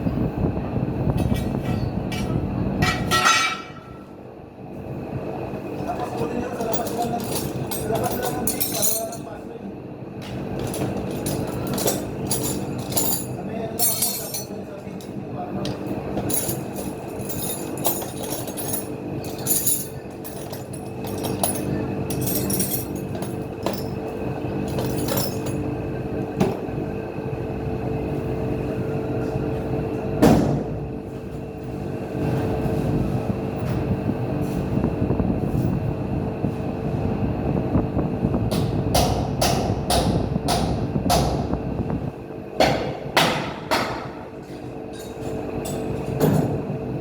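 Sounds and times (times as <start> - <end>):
steady mechanical hum: 0.0 - 47.0
repeated knocks and bangs: 42.6 - 44.2.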